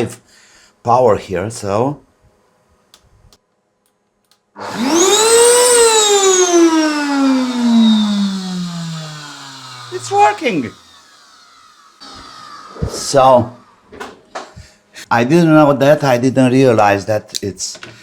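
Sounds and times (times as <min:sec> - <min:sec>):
vacuum cleaner motor whine: 0:04.6 - 0:14.2.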